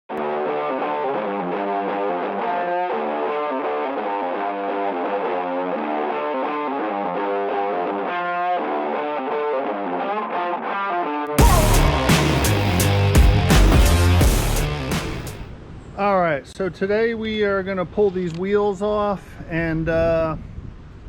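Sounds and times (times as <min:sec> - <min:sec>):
distorted electric guitar riff: 0:00.1 - 0:15.5.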